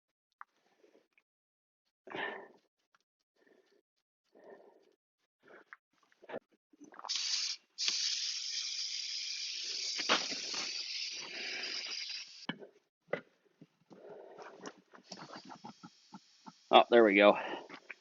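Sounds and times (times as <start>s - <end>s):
compressed air hissing: 7.0s - 12.5s, 15.0s - 18.0s.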